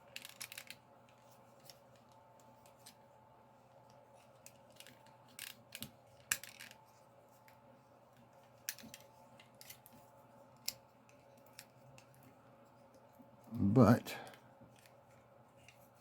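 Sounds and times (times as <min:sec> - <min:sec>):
plastic toy clicks and rattles: 0:00.1 - 0:00.8, 0:04.4 - 0:06.8.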